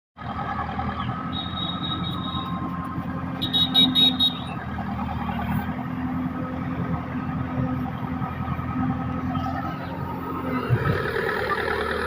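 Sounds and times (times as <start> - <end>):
diesel engine running: 0.2 - 12.0
high-pitched squeal: 1.2 - 2.7.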